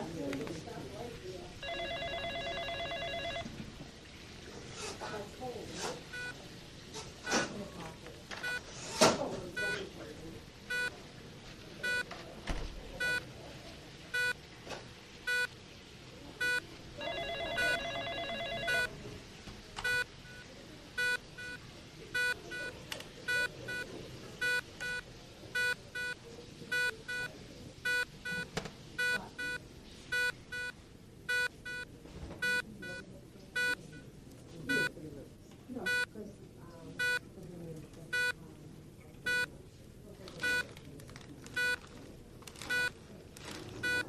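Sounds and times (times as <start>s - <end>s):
telephone trilled ring: 1.6s - 3.5s, 17.0s - 18.9s.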